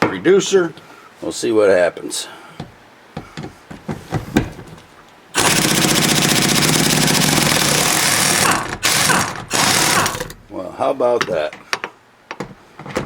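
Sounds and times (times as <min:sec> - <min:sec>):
impact wrench hammering rattle: 0:05.4 - 0:10.6.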